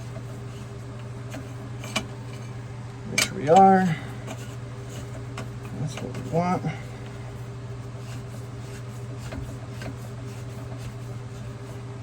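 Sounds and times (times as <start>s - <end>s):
low machine hum: 0.0s - 12.0s.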